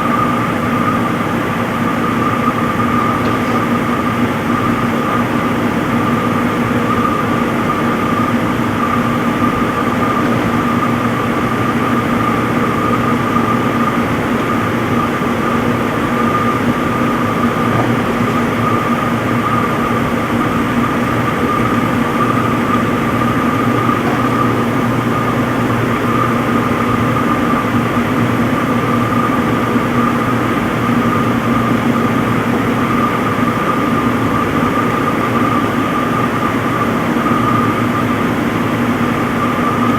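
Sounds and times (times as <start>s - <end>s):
washing machine spinning: 0.0s - 39.9s.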